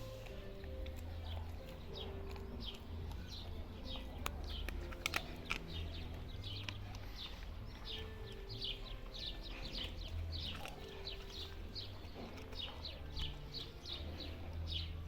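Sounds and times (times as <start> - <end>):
small birds chirping: 0.0 - 15.0
sharp clicks: 1.8 - 8.4.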